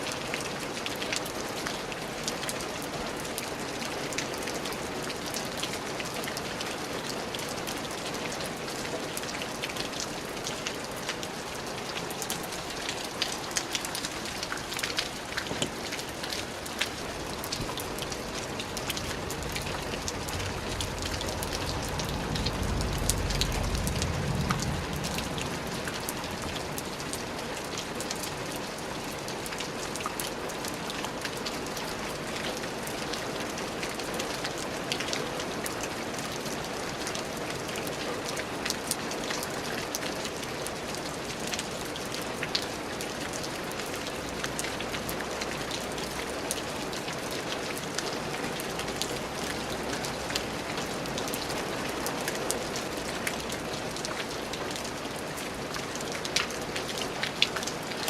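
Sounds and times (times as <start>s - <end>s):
rain drops ticking: 0.0s - 58.0s
low rumble: 19.0s - 26.4s.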